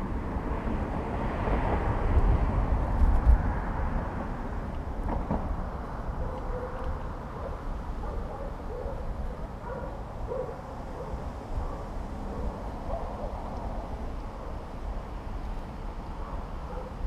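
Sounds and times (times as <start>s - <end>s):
bicycle rumble on street: 0.0s - 10.4s.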